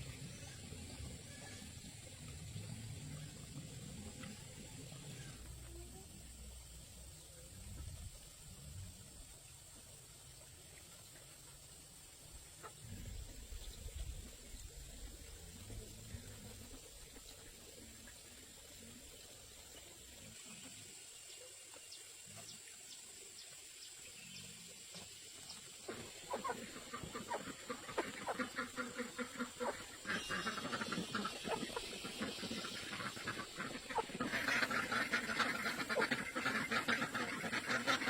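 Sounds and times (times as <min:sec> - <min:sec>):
ducks quacking: 0:25.9 - 0:38.0.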